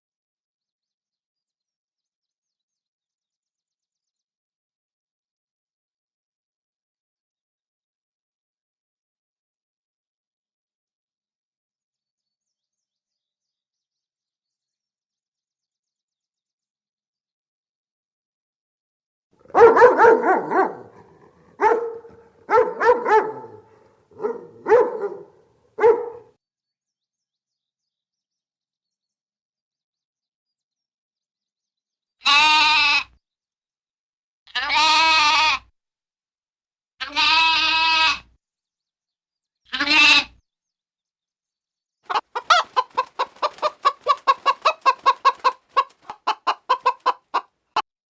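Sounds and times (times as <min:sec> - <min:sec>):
dog barking: 0:19.5 - 0:26.4
bleating calls: 0:32.2 - 0:33.2, 0:34.5 - 0:35.7, 0:37.0 - 0:38.3, 0:39.7 - 0:40.4
hen clucking rapidly: 0:42.1 - 0:47.6.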